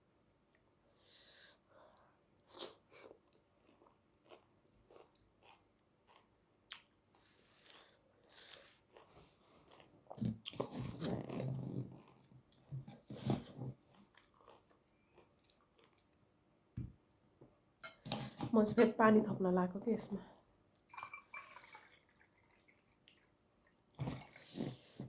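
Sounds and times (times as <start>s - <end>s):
chewing and biting food: 2.4s - 12.7s, 13.9s - 16.2s.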